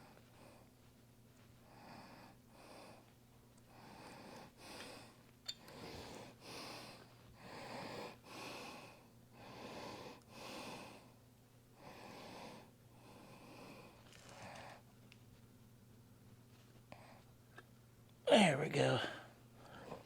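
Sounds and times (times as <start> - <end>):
man breathing hard: 1.6 - 3.1, 3.7 - 11.2, 11.8 - 14.0.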